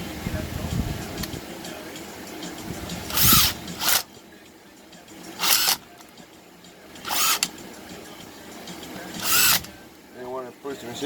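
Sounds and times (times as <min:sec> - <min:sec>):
cordless drill driving screws: 0:03.1 - 0:04.1, 0:05.4 - 0:05.9, 0:07.0 - 0:07.5, 0:09.2 - 0:09.7.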